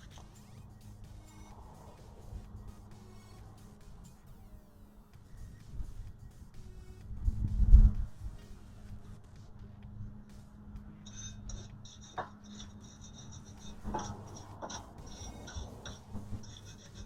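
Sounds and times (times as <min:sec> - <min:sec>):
steady low hum: 0:00.0 - 0:17.0
rapid high chirping: 0:11.1 - 0:17.0
tools clinking on brake parts: 0:11.1 - 0:17.0.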